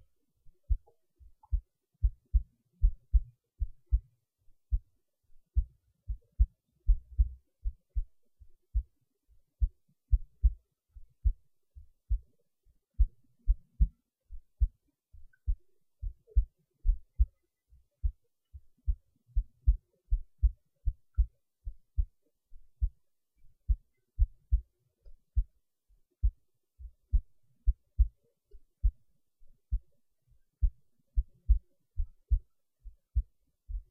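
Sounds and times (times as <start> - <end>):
heartbeat thumps: 0.6 - 4.0, 4.6 - 4.9, 5.5 - 9.0, 9.6 - 12.4, 13.0 - 17.3, 18.0 - 23.0, 23.6 - 24.6, 26.2 - 28.1, 28.8 - 29.0, 29.7 - 30.0, 30.6 - 33.9.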